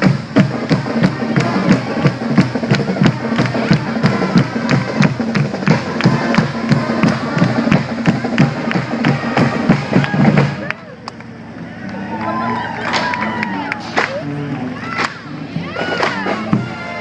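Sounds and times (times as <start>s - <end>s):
driving drum beat: 0.0s - 10.7s, 15.0s - 17.0s
marching band brass: 0.0s - 17.0s.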